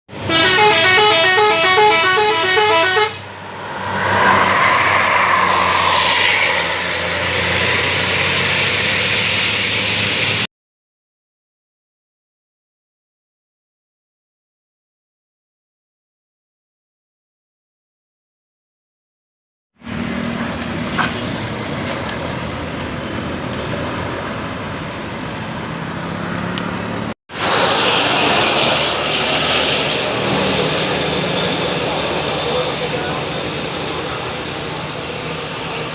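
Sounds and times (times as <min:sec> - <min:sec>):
bus horn playing a tune: 0:00.1 - 0:03.4
engine hum: 0:00.1 - 0:10.5, 0:19.8 - 0:35.9
road noise: 0:00.1 - 0:10.5, 0:19.8 - 0:35.9.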